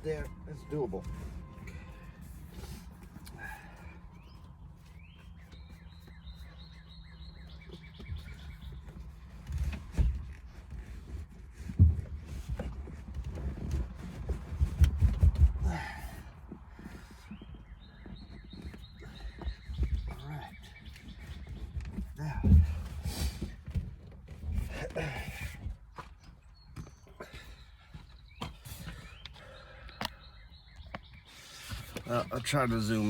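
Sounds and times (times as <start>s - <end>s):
bird chirping: 0.0s - 10.2s, 16.8s - 23.5s, 26.1s - 33.0s.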